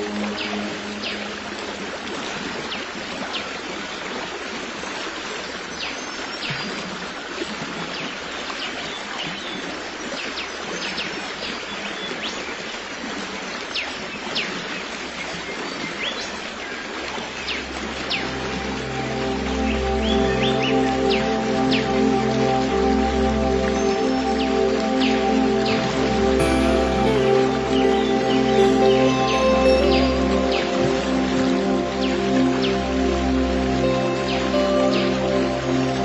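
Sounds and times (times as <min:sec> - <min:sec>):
stream water rushing: 0:00.0 - 0:36.0.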